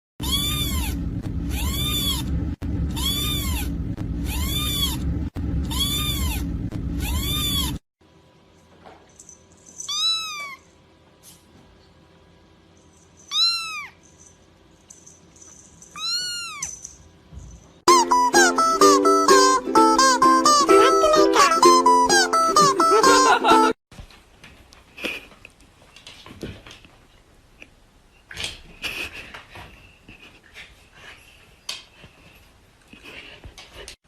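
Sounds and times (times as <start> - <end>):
cat meowing: 0.2 - 2.3, 2.9 - 5.0, 5.7 - 7.8, 9.9 - 10.7, 13.3 - 14.0, 16.0 - 16.7
loud steady rumble: 0.2 - 7.8
plucked string music: 17.9 - 23.8.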